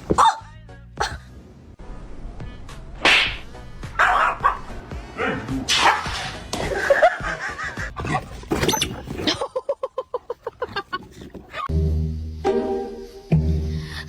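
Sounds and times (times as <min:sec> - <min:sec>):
dog growling and snarling: 0:10.5 - 0:11.7.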